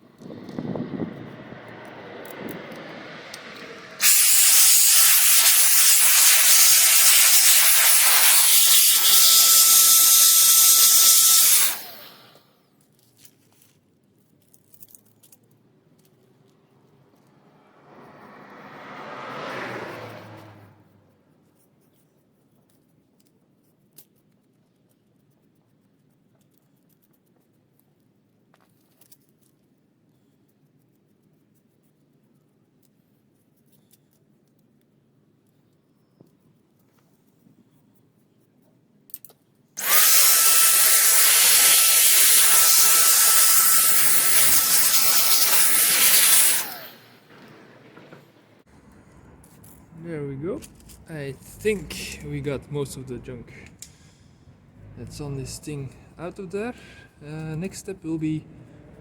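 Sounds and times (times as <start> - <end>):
electric blower rushing air: 0.1 - 12.4, 39.8 - 48.3.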